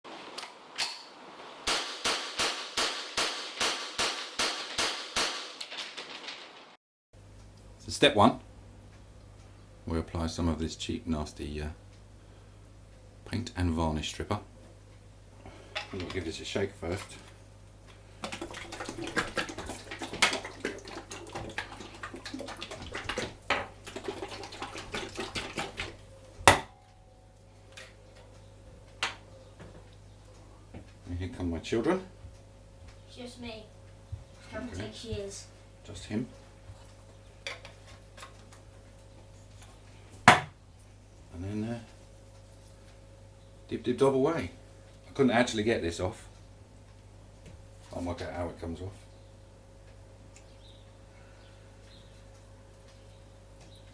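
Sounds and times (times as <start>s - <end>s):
liquid sloshing in shaken tin: 18.2s - 26.0s
sharp knocks: 26.4s - 26.8s.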